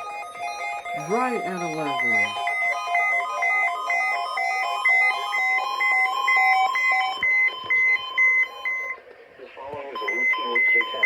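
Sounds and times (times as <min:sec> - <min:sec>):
steady warning alarm tone: 0:00.0 - 0:09.0, 0:10.0 - 0:11.0
alert beeps at several pitches: 0:01.0 - 0:02.6.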